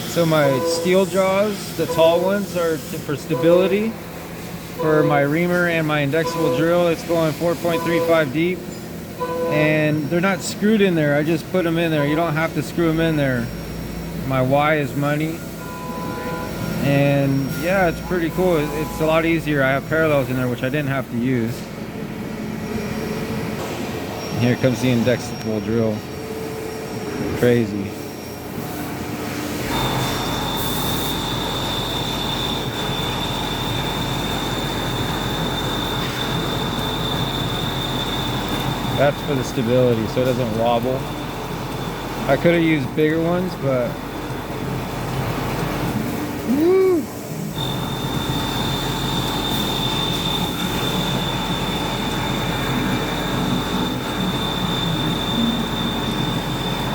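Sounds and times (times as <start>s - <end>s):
high-pitched whine: 0.0s - 21.7s, 45.9s - 56.9s
milling machine running: 0.0s - 56.9s
drill cutting with high squeal: 0.1s - 4.0s, 4.8s - 8.6s, 9.2s - 20.6s, 29.7s - 44.0s, 47.6s - 56.9s.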